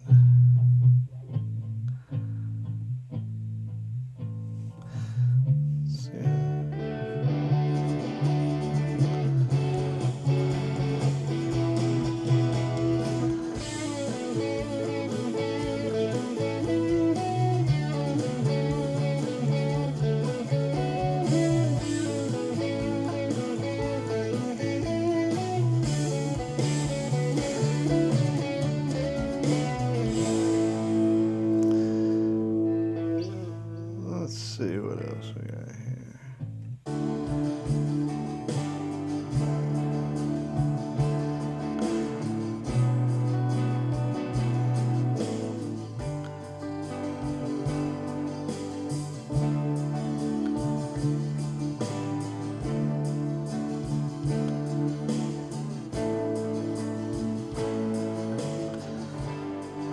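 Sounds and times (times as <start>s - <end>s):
bass line: 0.0s - 59.9s
guitar: 0.0s - 59.9s
band playing: 6.2s - 33.7s, 36.9s - 59.9s.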